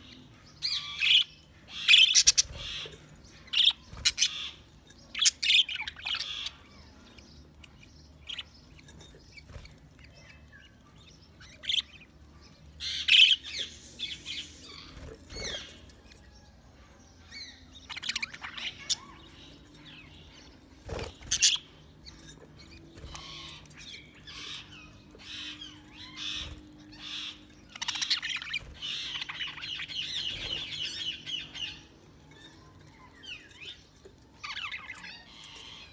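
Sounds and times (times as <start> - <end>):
budgerigars chirping: 0.0 - 6.6, 12.8 - 15.8, 17.2 - 33.8, 34.4 - 35.9.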